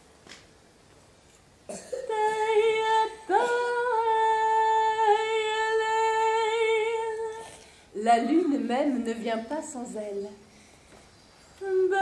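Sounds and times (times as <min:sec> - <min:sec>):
woman singing wordless notes: 0:02.0 - 0:10.5, 0:11.6 - 0:12.0.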